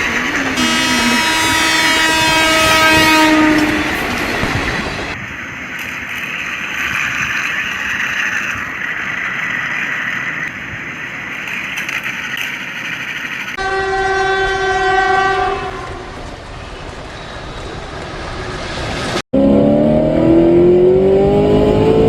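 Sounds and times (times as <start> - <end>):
moving train rumble: 0.0 - 22.0
train horn blowing: 0.6 - 4.2, 13.6 - 16.2.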